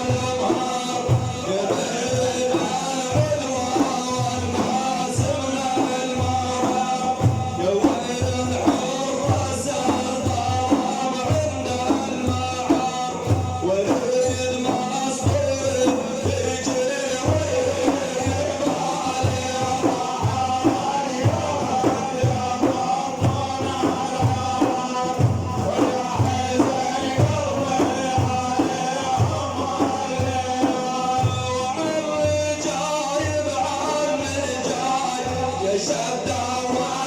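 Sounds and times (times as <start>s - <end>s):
steady drum beat: 0.0s - 37.0s.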